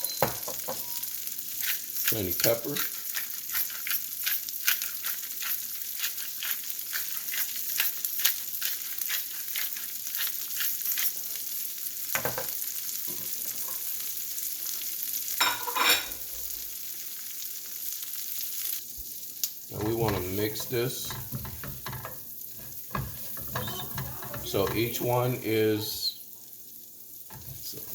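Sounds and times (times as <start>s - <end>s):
vegetables sizzling in a frying pan: 0.0s - 27.9s
scraping in a pan: 1.6s - 11.4s, 19.8s - 25.2s.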